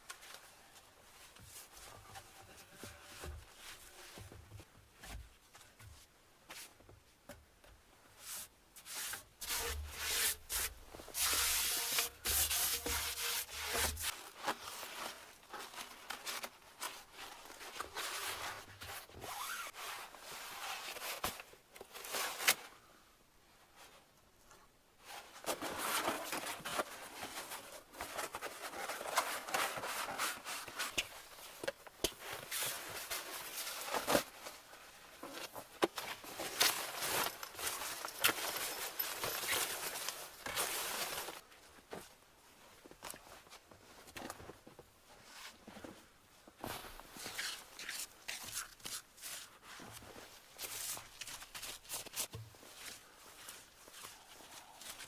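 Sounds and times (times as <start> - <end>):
scraping and rubbing strokes: 8.2 - 15.1.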